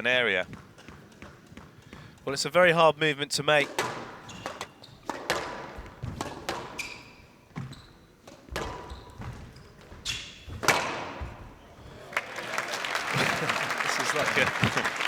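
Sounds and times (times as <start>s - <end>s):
shoes squeaking on court: 0.0s - 12.1s
squash ball hits: 3.7s - 11.7s, 14.6s - 14.8s.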